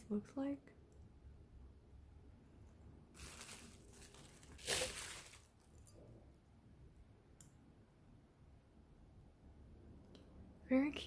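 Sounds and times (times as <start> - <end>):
packaging rustling: 3.2 - 5.8.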